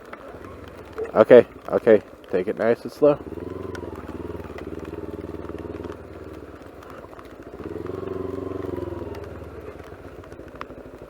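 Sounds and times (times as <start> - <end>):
hail ticking: 0.0 - 11.0
motorcycle engine running: 0.0 - 11.0.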